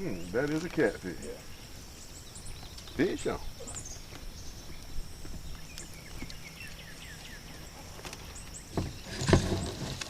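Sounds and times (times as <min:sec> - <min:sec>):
steady low hum: 0:00.0 - 0:09.7.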